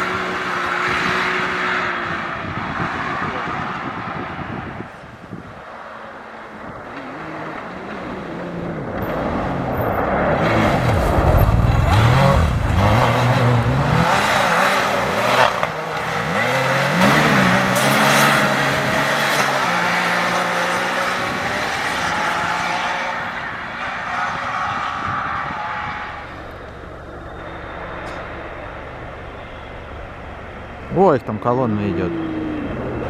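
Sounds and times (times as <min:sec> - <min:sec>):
race vehicle engine revving: 0:06.8 - 0:33.0.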